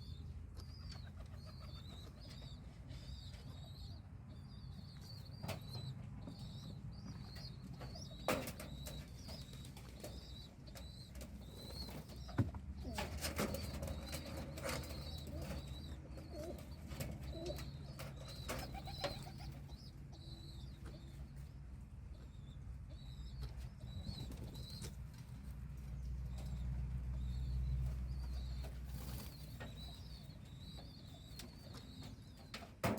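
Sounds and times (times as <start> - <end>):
pigeon squeaking: 0.1 - 21.4, 26.4 - 32.9.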